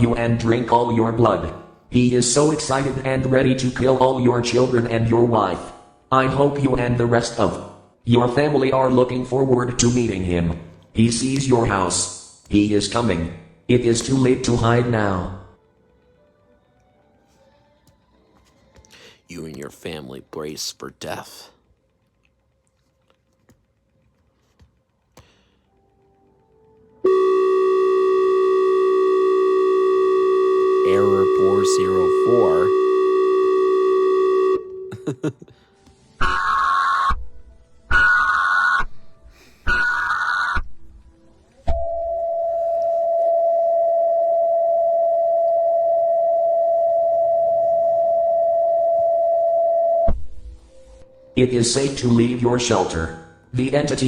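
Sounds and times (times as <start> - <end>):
loud electronic alert tone: 30.8 - 32.8.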